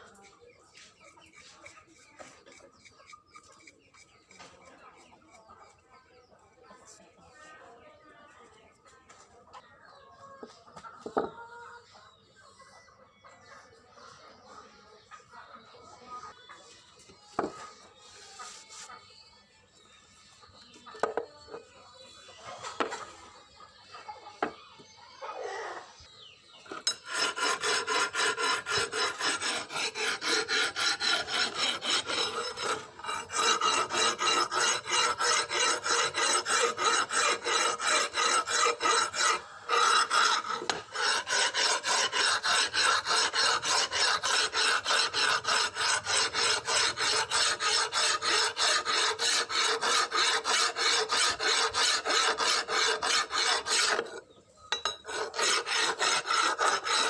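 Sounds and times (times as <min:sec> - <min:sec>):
hand file rasping: 0:00.0 - 0:05.8, 0:26.6 - 0:57.0.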